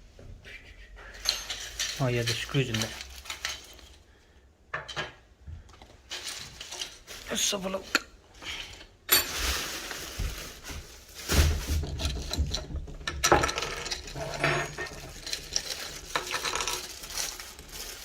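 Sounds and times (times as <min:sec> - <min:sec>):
metal parts clattering: 0:01.2 - 0:04.1, 0:06.0 - 0:07.8, 0:11.8 - 0:18.0.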